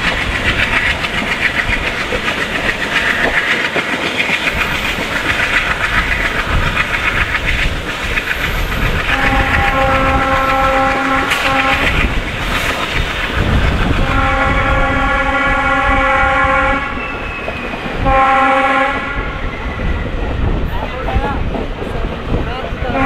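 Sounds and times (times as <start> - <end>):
train wheels clattering over rail joints: 0.0 - 23.0
locomotive horn blast: 9.1 - 12.0, 14.0 - 17.0, 18.0 - 19.4.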